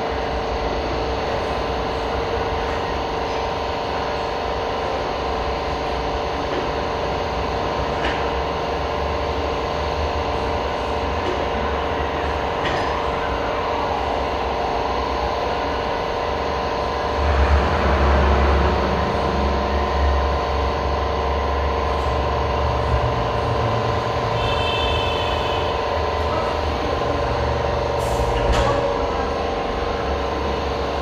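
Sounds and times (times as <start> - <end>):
machine hum: 0.0 - 31.0
deep low rumble: 17.0 - 24.3.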